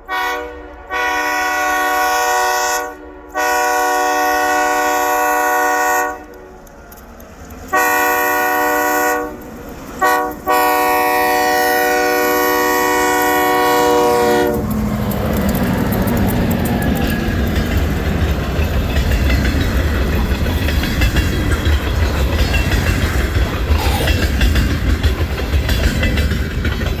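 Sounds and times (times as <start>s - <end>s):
locomotive air horn: 0.0s - 6.4s, 7.7s - 9.4s, 10.0s - 14.7s
train rumbling and rattling past: 0.0s - 27.0s.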